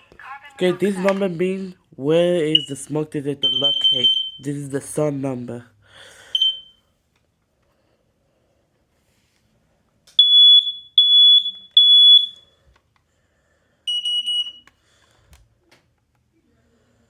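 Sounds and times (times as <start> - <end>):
smoke alarm high beeps: 2.5 - 2.8, 3.4 - 4.5, 6.3 - 6.8, 10.2 - 12.5, 13.9 - 14.7
quick lower alarm beeps: 3.4 - 4.5, 6.3 - 6.8, 10.2 - 12.5.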